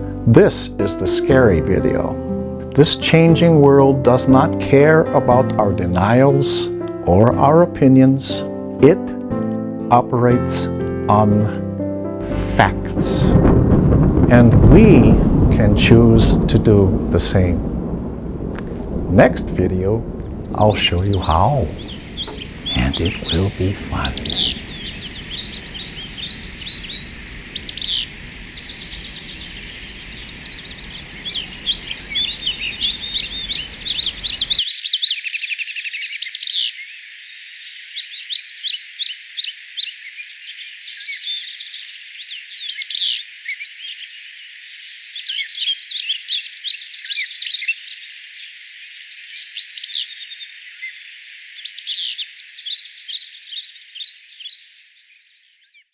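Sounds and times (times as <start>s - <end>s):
songbirds chirping and trilling: 0.0s - 55.9s
low background rumble: 12.2s - 27.6s.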